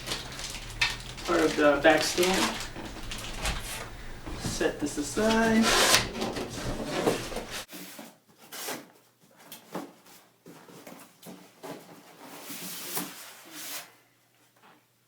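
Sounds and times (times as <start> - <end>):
packaging rustling: 0.0 - 7.7
parts scraping and knocking: 0.0 - 7.7.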